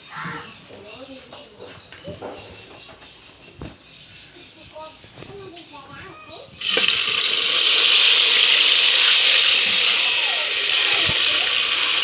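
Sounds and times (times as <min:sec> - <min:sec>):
food sizzling in hot oil: 0:06.6 - 0:12.0.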